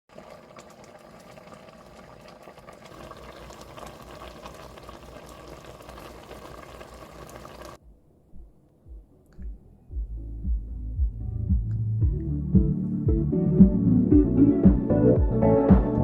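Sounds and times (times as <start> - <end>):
stew bubbling in a pot: 0.1 - 7.8.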